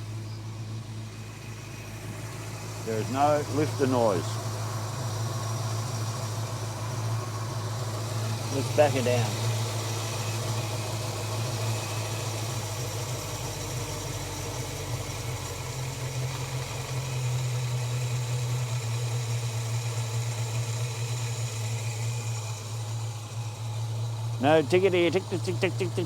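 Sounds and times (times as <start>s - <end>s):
car engine idling: 0.0s - 26.0s.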